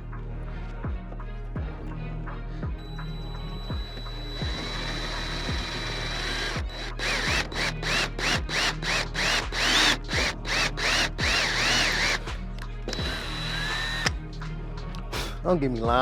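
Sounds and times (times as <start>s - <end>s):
power drill in short bursts: 4.6s - 12.2s.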